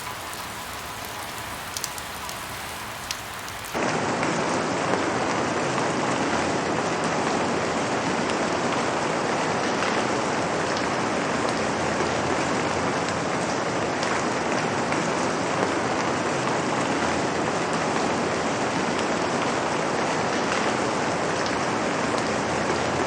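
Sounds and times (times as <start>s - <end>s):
rain hissing: 0.0s - 3.8s.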